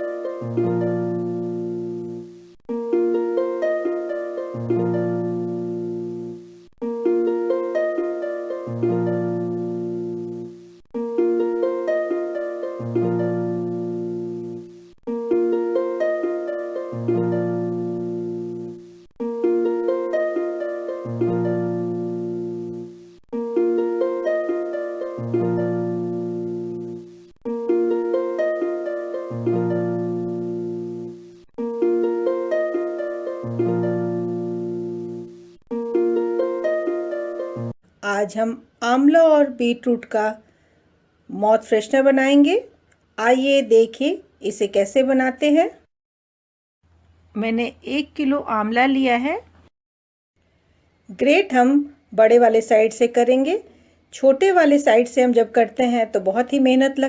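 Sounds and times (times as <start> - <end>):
looping plucked notes: 0.0 - 37.8.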